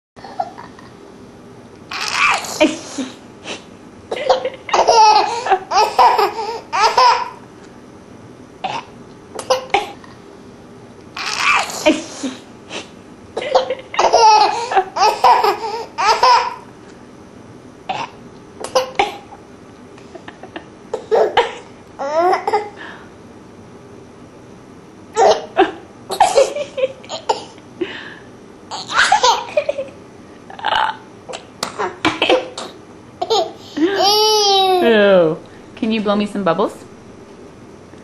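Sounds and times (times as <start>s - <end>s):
baby laughing: 1.9s - 3.0s, 4.2s - 7.4s, 11.2s - 12.1s, 13.4s - 16.7s, 21.0s - 22.8s, 25.2s - 27.6s, 28.7s - 30.0s, 33.2s - 34.8s.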